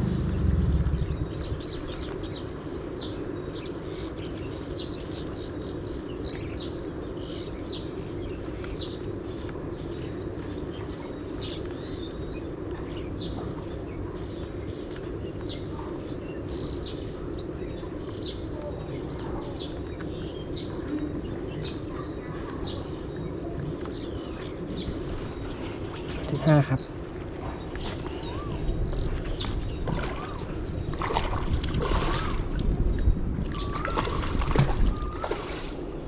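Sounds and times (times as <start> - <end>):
louder low rumble: 0.0 - 2.1
steady low rumble: 0.0 - 35.2
small birds chirping: 0.0 - 36.0.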